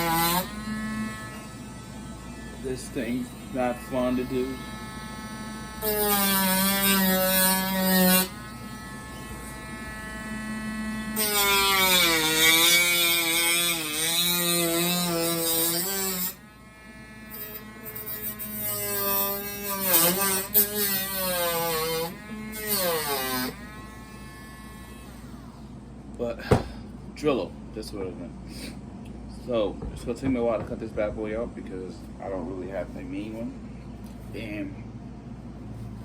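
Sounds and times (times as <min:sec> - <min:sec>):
rotary tool cutting plastic: 0:00.0 - 0:16.4, 0:17.2 - 0:25.6.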